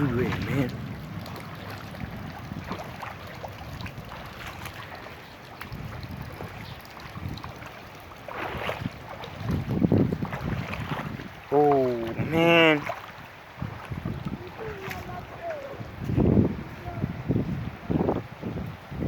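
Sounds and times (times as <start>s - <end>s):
floodwater sloshing and splashing: 0.0s - 18.0s.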